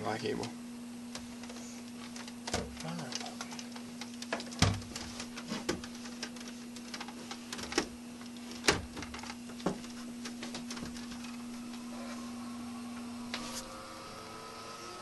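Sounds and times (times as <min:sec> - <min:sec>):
electrical hum: 0:00.0 - 0:15.0
cables and hardware clicking: 0:00.2 - 0:11.9.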